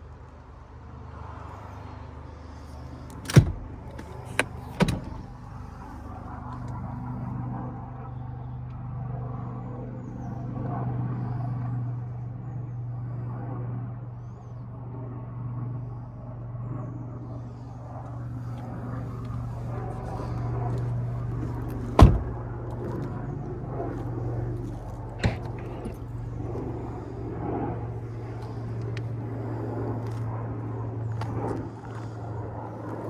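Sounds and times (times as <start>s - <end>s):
car engine idling: 2.7s - 6.0s.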